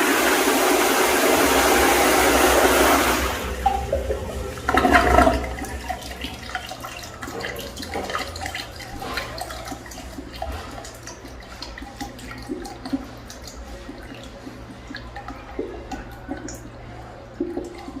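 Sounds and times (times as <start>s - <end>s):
toilet flush water rushing: 0.0s - 18.0s
low hum: 1.2s - 7.9s.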